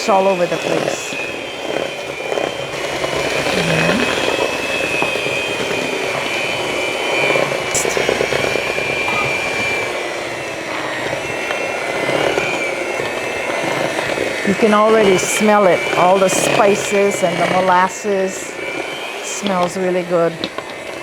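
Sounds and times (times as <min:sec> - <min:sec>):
electric mixer running: 0:00.0 - 0:21.0.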